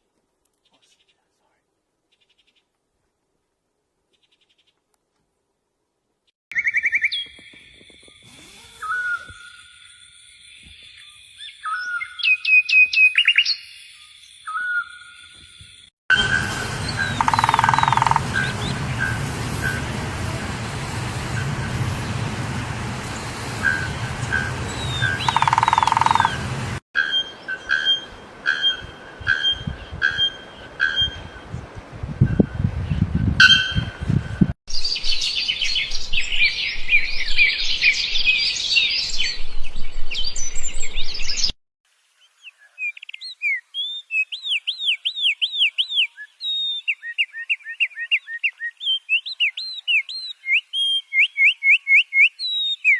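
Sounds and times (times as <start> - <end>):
birds calling: 16.2 - 19.9, 23.1 - 31.4
dense chorus of high chirping: 24.3 - 26.4.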